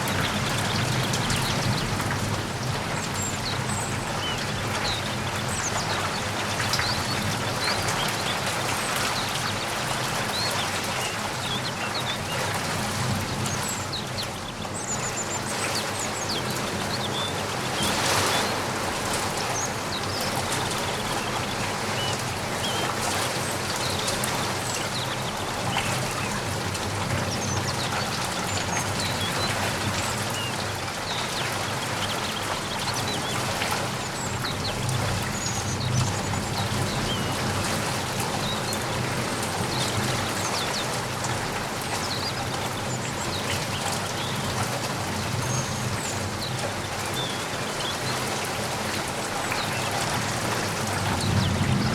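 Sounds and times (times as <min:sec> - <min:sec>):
rainfall: 0:00.0 - 0:51.9
small birds chirping: 0:19.4 - 0:26.6, 0:45.1 - 0:48.3.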